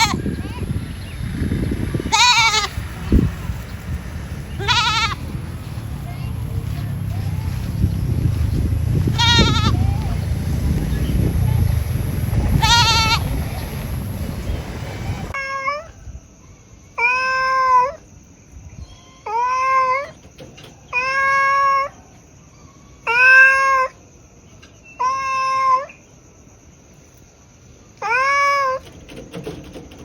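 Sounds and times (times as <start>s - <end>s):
cat meowing: 0.0s - 0.4s, 2.1s - 2.8s, 4.6s - 5.3s, 9.2s - 10.2s, 12.5s - 13.4s, 23.1s - 23.9s, 25.0s - 25.9s, 28.0s - 28.8s.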